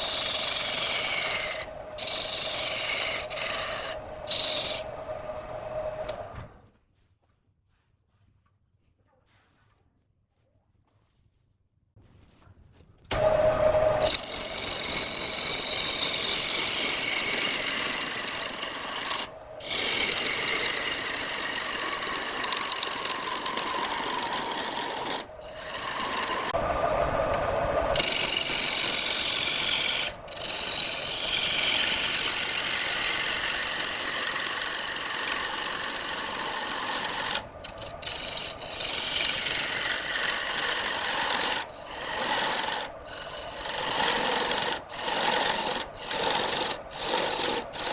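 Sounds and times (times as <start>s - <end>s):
wood lathe tool scraping wood: 0.0s - 6.4s, 13.1s - 47.9s.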